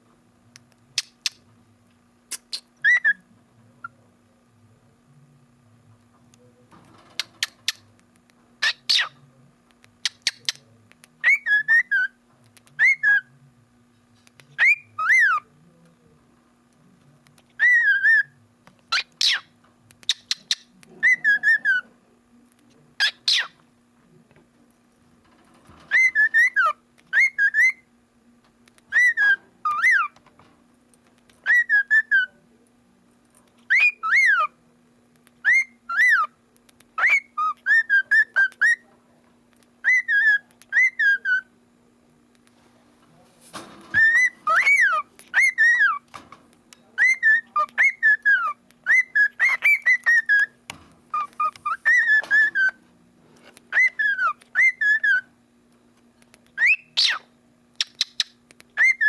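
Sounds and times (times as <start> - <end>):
cockatiel whistled calls: 56.6 - 57.2.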